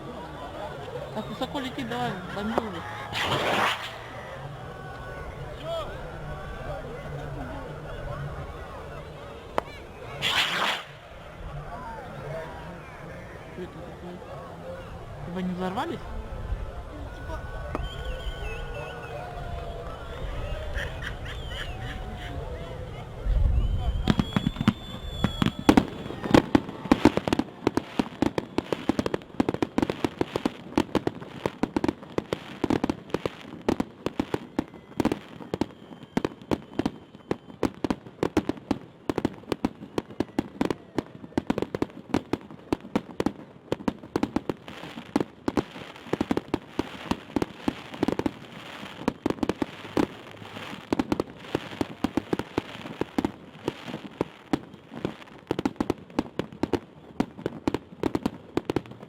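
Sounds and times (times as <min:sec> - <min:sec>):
fireworks crackling and banging: 0:00.0 - 0:12.9, 0:13.6 - 0:16.1, 0:19.2 - 0:59.0
firework whistle: 0:01.0 - 0:04.6, 0:10.0 - 0:11.3, 0:17.6 - 0:22.3, 0:23.4 - 0:42.4, 0:45.6 - 0:55.4.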